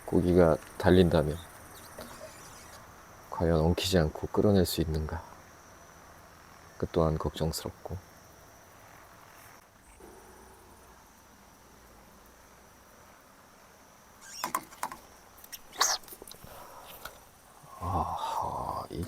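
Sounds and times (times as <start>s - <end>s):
night insects chirring: 0.0s - 19.0s.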